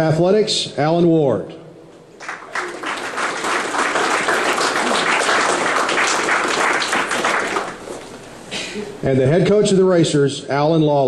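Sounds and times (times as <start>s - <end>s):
audience applauding: 2.2s - 8.2s.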